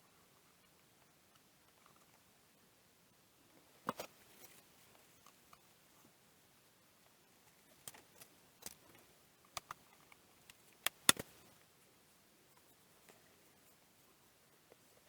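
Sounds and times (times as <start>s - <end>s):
plastic parts clicking and knocking: 7.8s - 8.9s, 9.5s - 11.4s.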